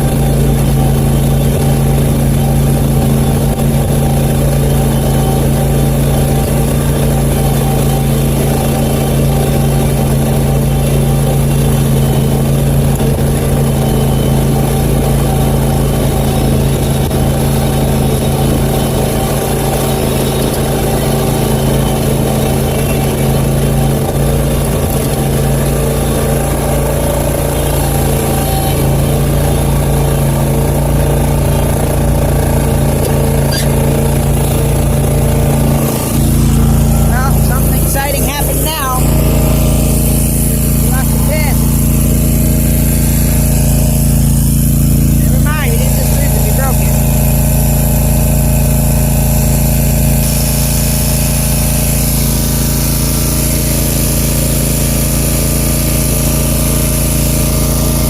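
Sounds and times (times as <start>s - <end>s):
mower engine running: 0.0s - 58.0s.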